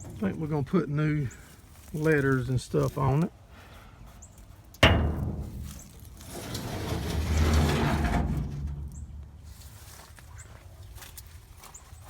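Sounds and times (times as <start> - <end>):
sharp metal clank: 4.8 - 6.1
metal scraping and rattling: 4.8 - 10.3.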